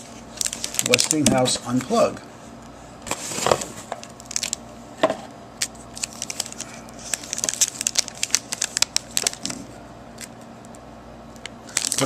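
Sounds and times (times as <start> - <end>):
packaging clicks and crinkles: 0.4 - 1.9, 3.1 - 4.6, 5.6 - 10.8, 11.4 - 12.0.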